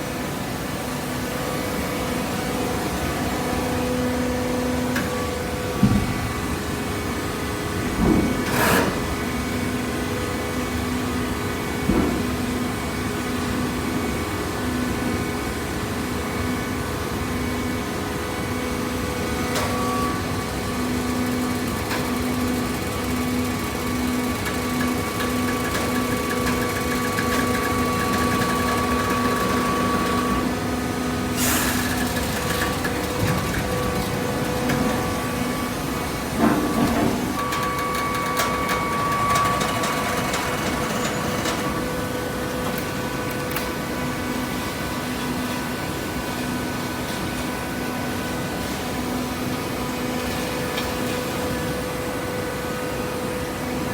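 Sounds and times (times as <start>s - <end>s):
hydraulic baler humming: 17.8s - 44.9s.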